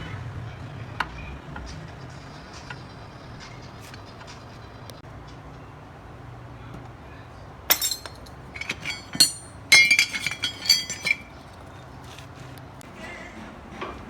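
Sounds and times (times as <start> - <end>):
metal pieces clinking: 7.7 - 11.6.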